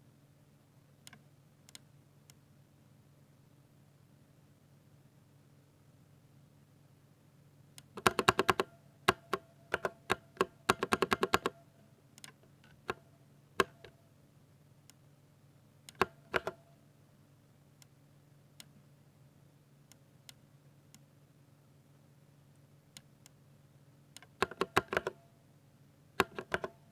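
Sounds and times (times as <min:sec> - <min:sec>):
mechanical keyboard typing: 0:08.0 - 0:11.6, 0:15.9 - 0:16.6, 0:24.2 - 0:25.2, 0:26.2 - 0:26.8.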